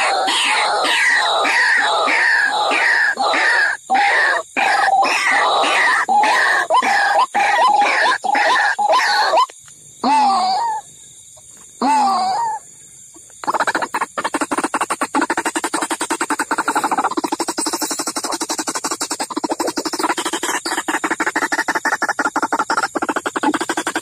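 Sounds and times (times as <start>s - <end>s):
bird drawn-out calls: 0.0s - 10.9s, 13.2s - 24.0s
bird harsh croaking calls: 0.0s - 10.9s, 11.8s - 24.0s.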